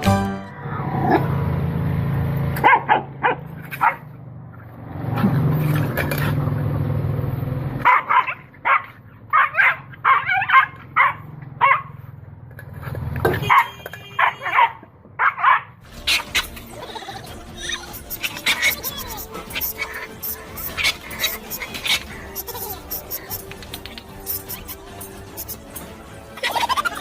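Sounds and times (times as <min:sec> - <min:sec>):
sharp yelping calls: 0:13.5 - 0:25.8
animal growling: 0:15.9 - 0:22.4.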